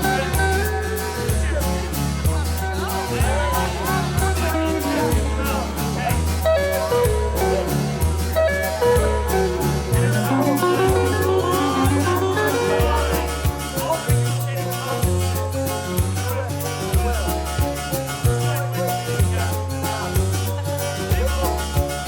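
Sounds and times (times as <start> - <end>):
song with bass and guitar: 0.0 - 22.0
person singing: 9.6 - 13.5.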